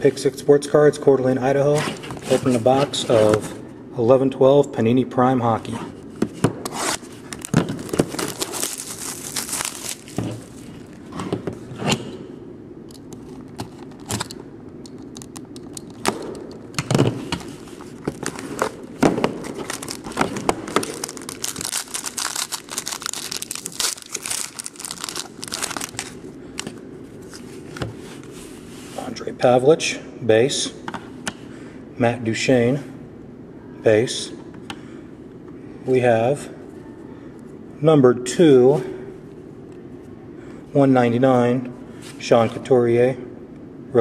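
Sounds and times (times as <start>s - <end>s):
packaging tearing and crinkling: 6.8s - 11.0s, 17.8s - 18.8s, 19.4s - 26.3s.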